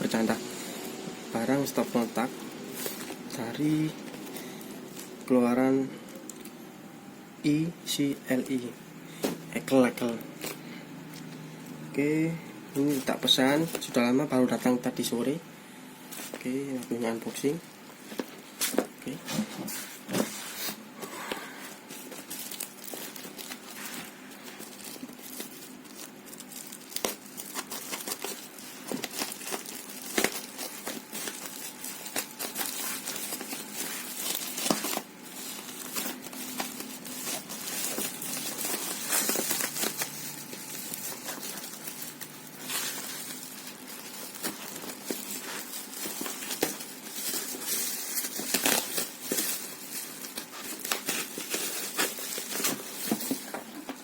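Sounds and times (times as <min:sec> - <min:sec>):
packaging crinkling and tearing: 0:01.4 - 0:05.3, 0:21.7 - 0:54.0.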